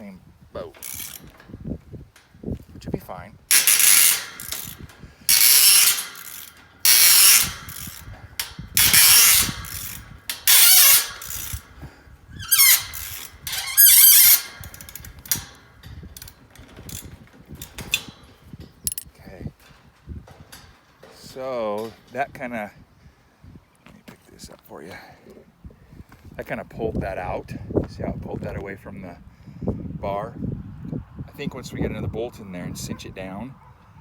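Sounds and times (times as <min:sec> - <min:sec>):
ratchet wrench clicking: 0:00.8 - 0:01.4, 0:03.5 - 0:11.8, 0:12.4 - 0:19.0.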